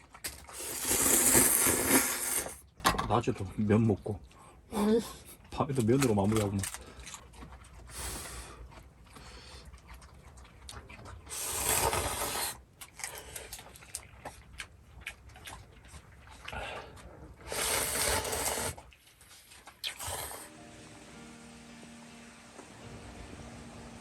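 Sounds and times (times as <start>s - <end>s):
person slurping noodles: 0.4s - 2.6s, 11.3s - 13.5s, 16.5s - 19.0s, 19.8s - 20.5s.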